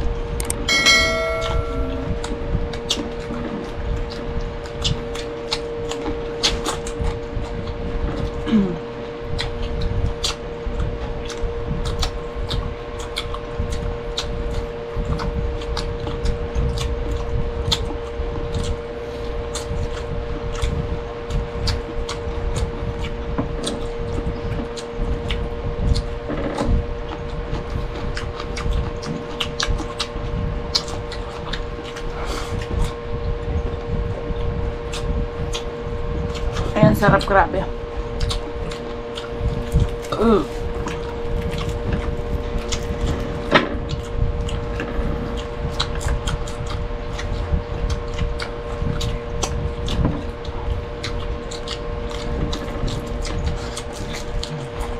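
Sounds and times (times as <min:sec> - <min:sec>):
steady hum: 0:00.0 - 0:54.9
chewing with clicks and smacks: 0:01.6 - 0:54.9.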